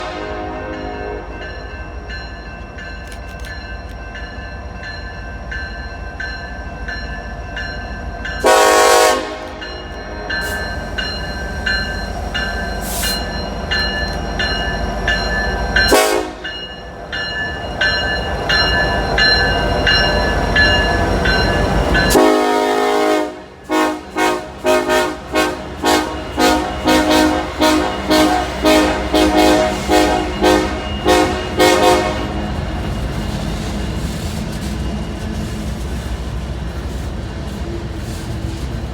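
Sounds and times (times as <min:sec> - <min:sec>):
locomotive air horn blasts: 0:00.0 - 0:01.4, 0:08.4 - 0:10.6, 0:15.9 - 0:16.5, 0:22.1 - 0:32.6.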